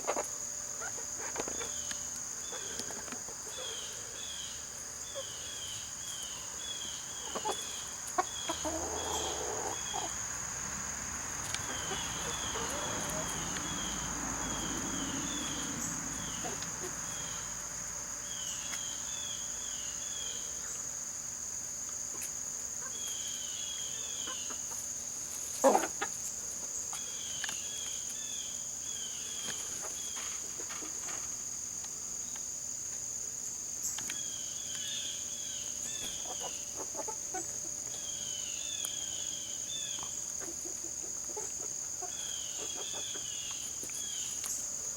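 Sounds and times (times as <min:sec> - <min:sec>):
chickens clucking softly: 0:00.0 - 0:03.9, 0:07.1 - 0:10.2, 0:11.4 - 0:17.4, 0:24.1 - 0:27.5, 0:36.0 - 0:38.0, 0:40.0 - 0:44.0
insects trilling: 0:00.0 - 0:44.9.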